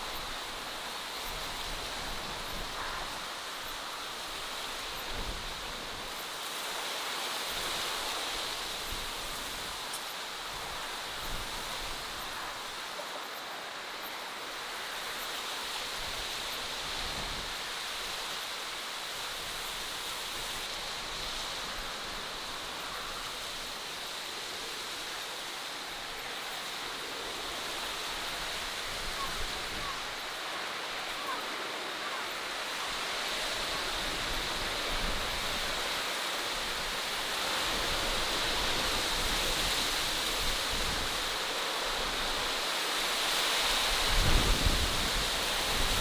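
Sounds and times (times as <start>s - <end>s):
even rushing hiss: 0.0s - 46.0s.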